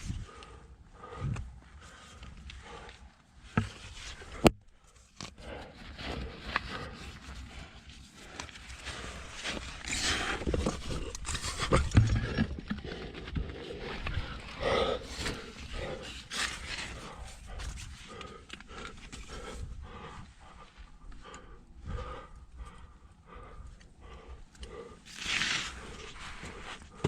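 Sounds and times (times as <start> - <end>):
climber grunting and breathing: 0.0 - 27.0
body scraping against rock: 8.6 - 18.0, 25.1 - 27.0.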